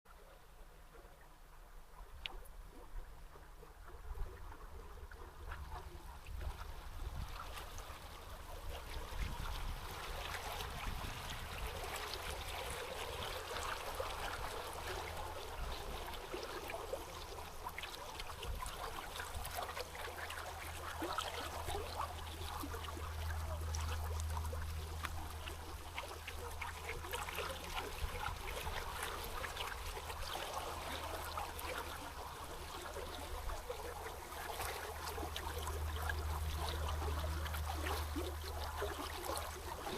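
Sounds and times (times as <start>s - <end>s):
river water babbling: 0.1s - 39.9s.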